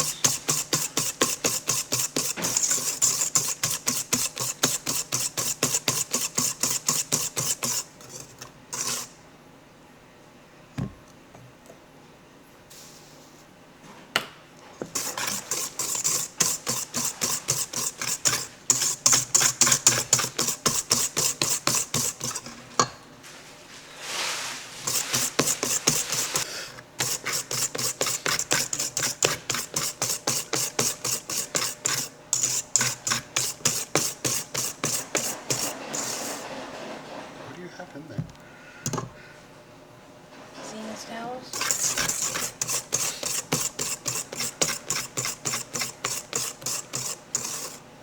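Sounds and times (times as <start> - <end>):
wire whisk scraping a bowl: 0.0 - 9.2, 14.8 - 22.9, 24.0 - 37.4, 40.6 - 47.8.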